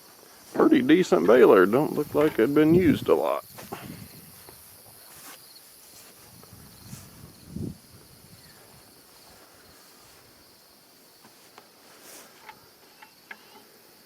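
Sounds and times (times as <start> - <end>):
crickets and insects chirping: 0.0 - 14.0.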